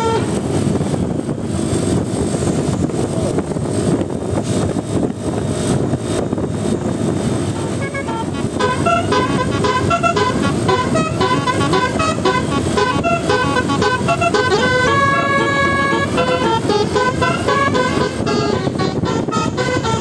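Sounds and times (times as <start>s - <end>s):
multi-tone bus horn tune: 0.0s - 0.9s, 7.4s - 20.0s
steady low rumble: 0.0s - 20.0s.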